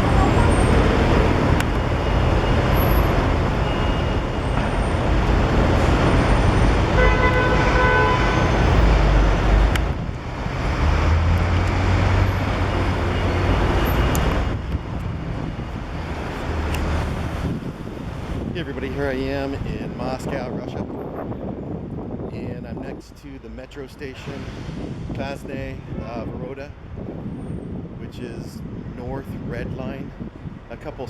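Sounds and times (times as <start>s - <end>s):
road traffic running past: 0.0s - 22.2s
vehicle horn: 6.8s - 8.9s.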